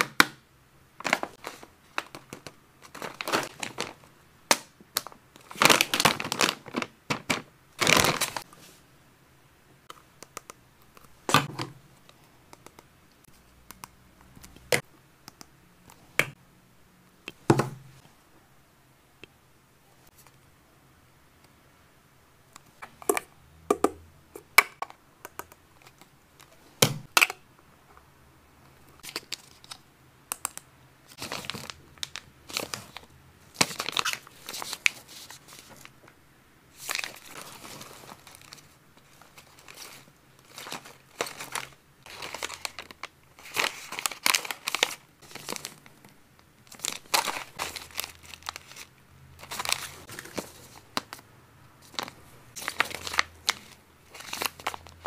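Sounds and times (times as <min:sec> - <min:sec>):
plastic packaging crinkling: 0:01.0 - 0:08.5, 0:31.1 - 0:36.0, 0:36.7 - 0:51.2, 0:51.8 - 0:55.0
sharp clicks and taps: 0:12.5 - 0:16.4, 0:22.5 - 0:25.6.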